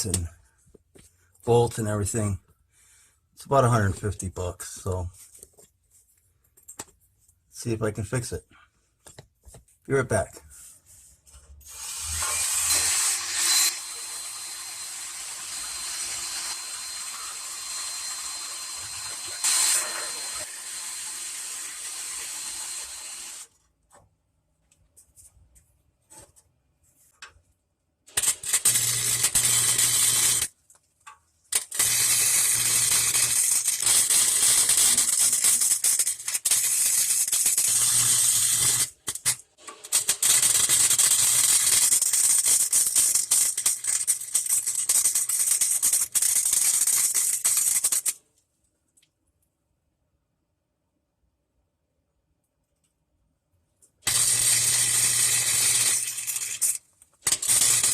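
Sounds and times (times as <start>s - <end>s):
welder arc crackling and sizzling: 11.6s - 23.6s, 28.1s - 30.5s, 31.5s - 48.2s, 54.1s - 57.9s.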